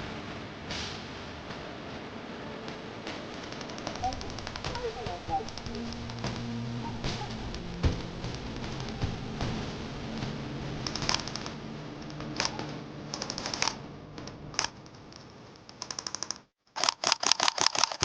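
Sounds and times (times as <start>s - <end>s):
airsoft rifle bursts: 16.8s - 18.0s.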